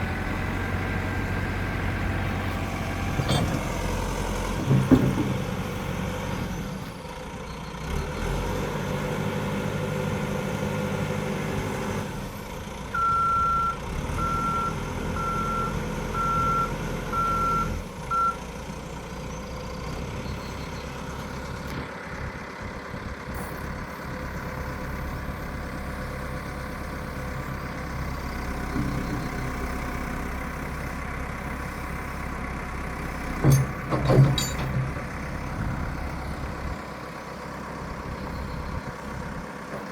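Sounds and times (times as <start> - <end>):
backhoe diesel engine running: 0.0 - 39.9
reversing alarm beeping: 13.0 - 18.4.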